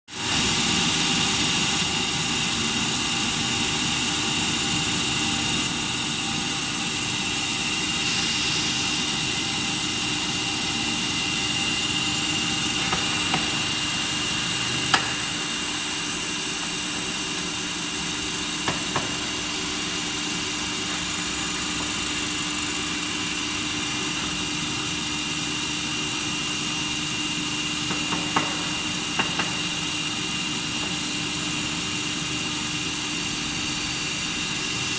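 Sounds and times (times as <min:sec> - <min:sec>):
welding machine whine: 0:00.2 - 0:34.9.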